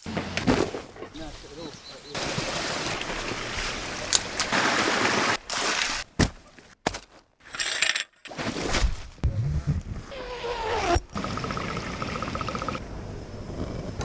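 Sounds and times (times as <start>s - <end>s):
stream water rushing: 2.2s - 5.4s.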